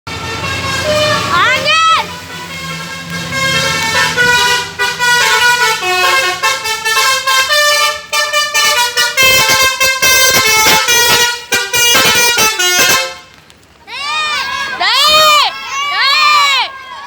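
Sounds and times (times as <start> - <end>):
bus multi-tone musical horn: 0.1 - 13.3.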